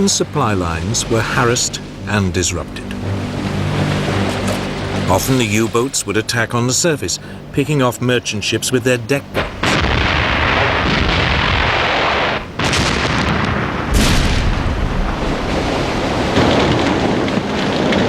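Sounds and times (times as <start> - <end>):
long rumble: 0.0 - 18.0
heavy explosion blasts: 9.4 - 18.0.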